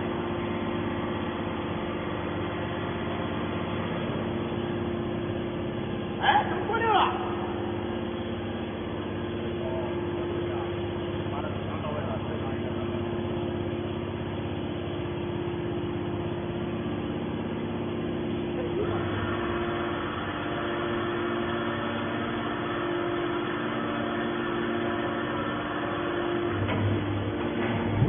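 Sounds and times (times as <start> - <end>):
harsh bright machine noise: 0.0 - 28.0
hydraulic power unit humming: 0.0 - 28.0.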